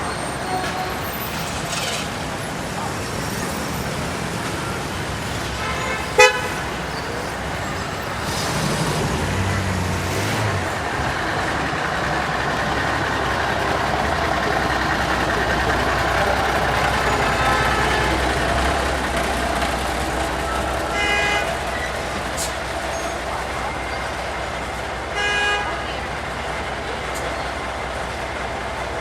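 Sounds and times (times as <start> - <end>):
heavy engine passing: 0.0 - 25.2
passing traffic: 0.0 - 29.0
vehicle horn toot: 5.6 - 7.1, 20.9 - 21.6, 25.2 - 26.0.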